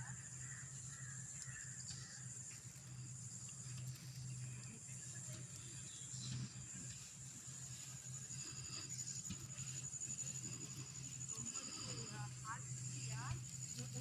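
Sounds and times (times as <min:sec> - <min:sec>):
insect chirring: 0:00.0 - 0:14.0
low steady hum: 0:00.0 - 0:14.0.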